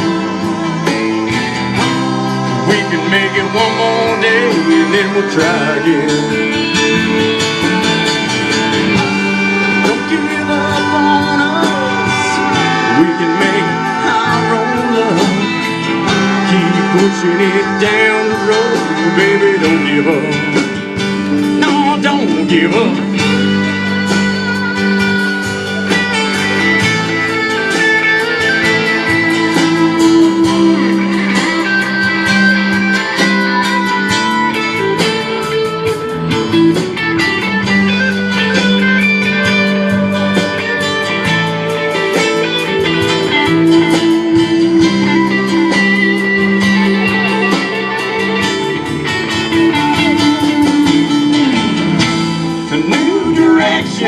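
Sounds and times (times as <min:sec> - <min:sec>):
band playing instrumental: 0:00.0 - 0:54.0
lead guitar melody: 0:00.0 - 0:54.0.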